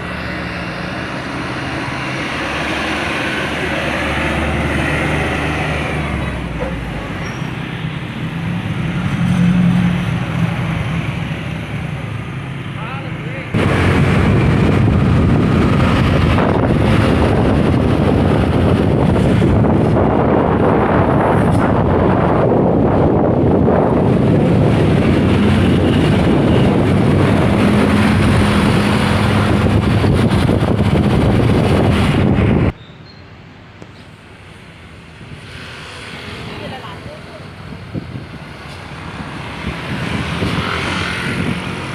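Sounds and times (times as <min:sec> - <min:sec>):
diesel trucks driving past: 0:00.0 - 0:41.9
wind noise on microphone: 0:13.5 - 0:33.2, 0:34.4 - 0:36.4, 0:37.0 - 0:41.9.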